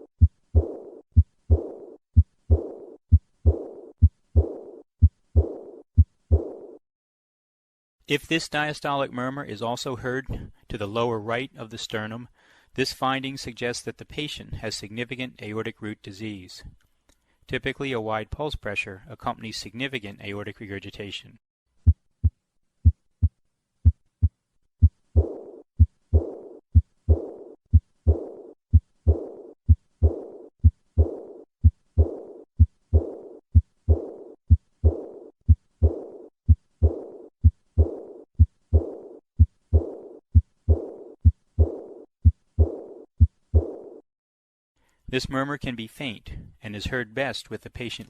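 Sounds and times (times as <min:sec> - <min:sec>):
heartbeat: 0:00.0 - 0:06.8, 0:21.8 - 0:44.0
high-pitched heart murmur: 0:00.0 - 0:06.8, 0:21.8 - 0:44.0.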